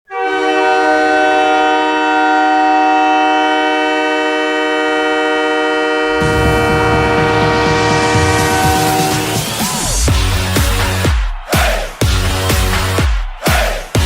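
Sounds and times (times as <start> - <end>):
goal horn chord: 0.1 - 11.3
music with drums and bass: 6.2 - 14.0.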